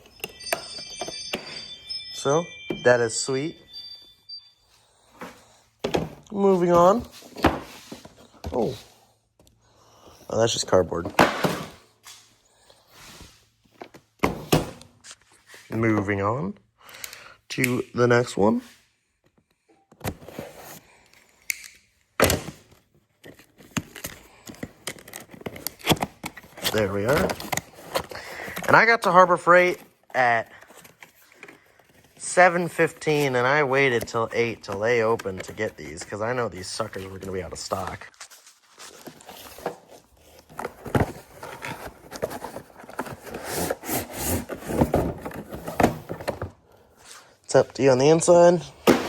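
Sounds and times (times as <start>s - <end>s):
cardboard box rubbing and scraping: 41.6s - 45.2s.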